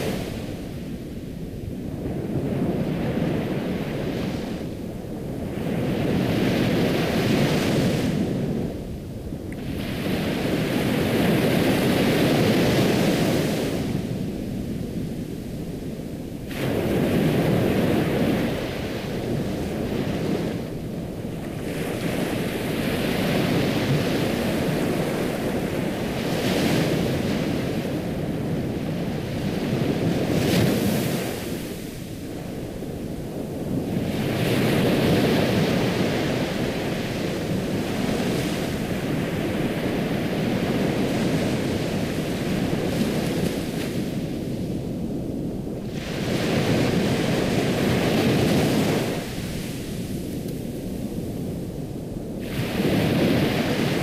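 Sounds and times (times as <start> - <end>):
ocean waves breaking on shore: 0.0 - 54.0.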